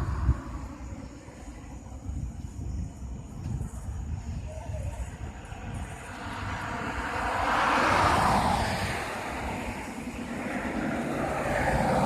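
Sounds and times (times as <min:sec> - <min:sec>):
vehicle passing: 0:05.6 - 0:12.0.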